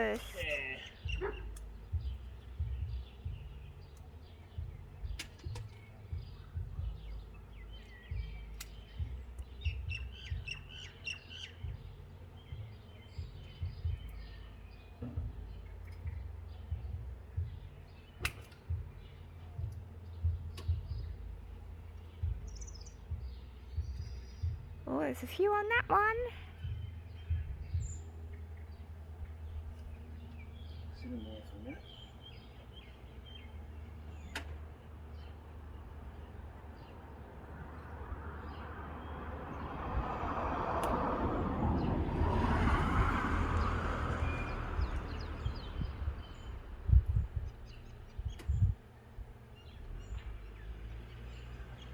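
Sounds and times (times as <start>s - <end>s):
steady low rumble: 0.0s - 50.7s
light ticks: 7.8s - 9.5s, 40.8s - 41.0s
secateurs snipping branches: 18.2s - 18.7s
low rumble: 35.4s - 50.7s
car passing by: 35.7s - 47.1s, 49.7s - 51.9s.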